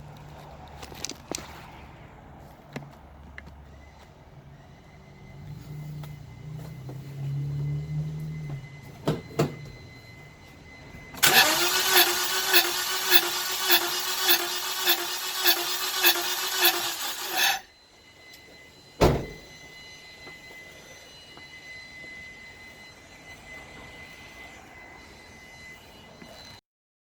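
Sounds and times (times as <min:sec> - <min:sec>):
car starter cranking engine: 0:11.2 - 0:17.6
thump: 0:19.0 - 0:19.5.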